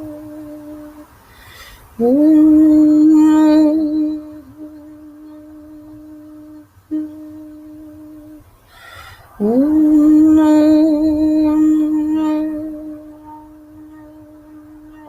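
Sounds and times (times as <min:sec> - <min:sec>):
person humming held notes: 0:00.0 - 0:15.0
breath: 0:01.2 - 0:02.0, 0:08.6 - 0:09.4.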